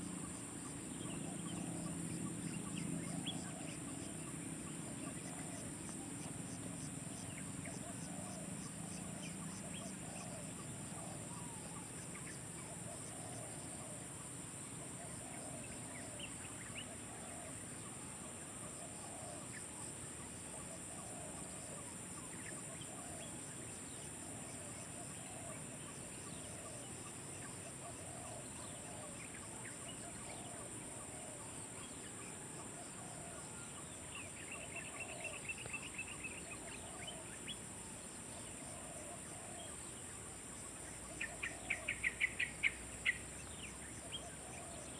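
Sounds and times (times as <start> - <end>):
high insect drone: 0.0 - 44.9.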